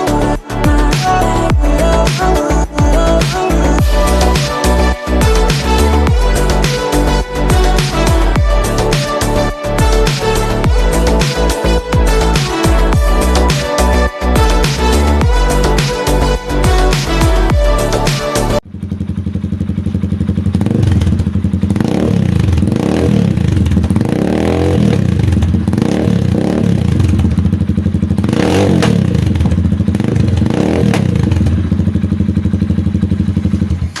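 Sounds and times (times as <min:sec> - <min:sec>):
music: 0:00.0 - 0:18.6
motorcycle engine revving: 0:00.0 - 0:34.0.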